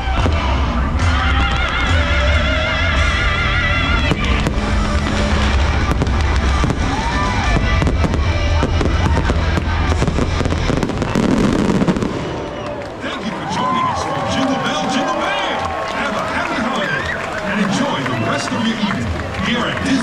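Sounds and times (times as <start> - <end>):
loud show music: 0.0 - 12.5
fireworks bursting and crackling: 3.1 - 13.9.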